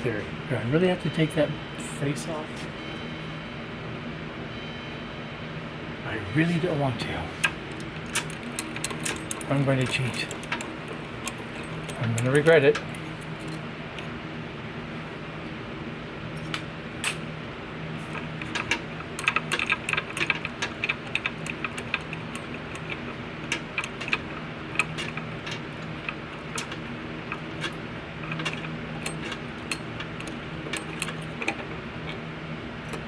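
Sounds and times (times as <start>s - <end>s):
steady low hum: 0.0s - 33.0s
small metal parts clinking: 7.4s - 14.2s, 18.0s - 32.2s, 32.8s - 33.0s.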